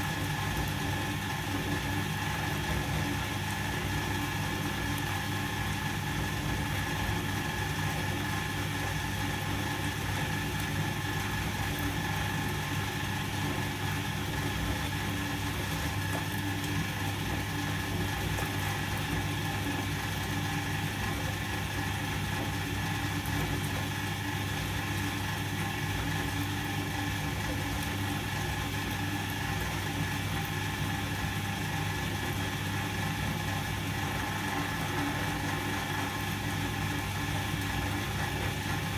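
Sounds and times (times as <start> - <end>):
washing machine motor hum: 0.0 - 38.9.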